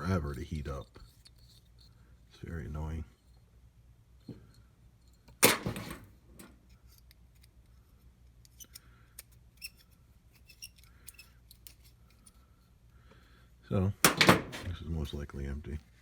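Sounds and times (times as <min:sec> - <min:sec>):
light clicks of parts handled: 0:06.4 - 0:13.3.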